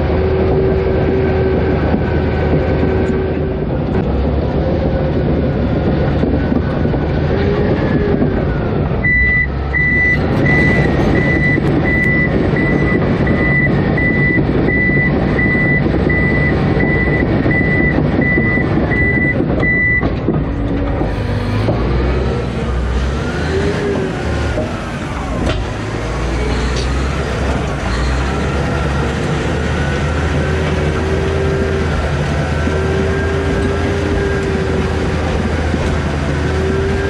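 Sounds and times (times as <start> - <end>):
bulldozer running: 0.0 - 37.0
back-up alarm beeping: 9.0 - 20.1.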